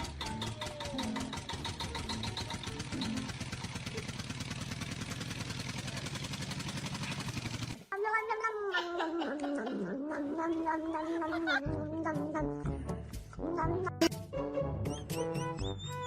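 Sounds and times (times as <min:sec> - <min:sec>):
cat yowling: 0:08.0 - 0:12.4.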